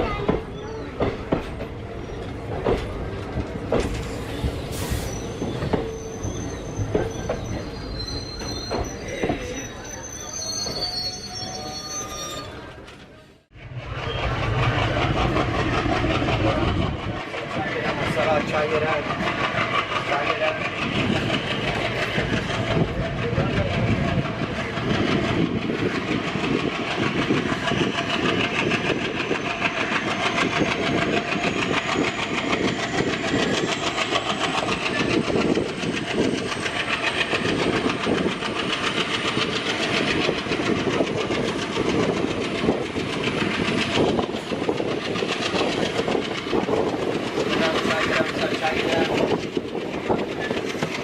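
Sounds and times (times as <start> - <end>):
train rumble: 0.0 - 51.0.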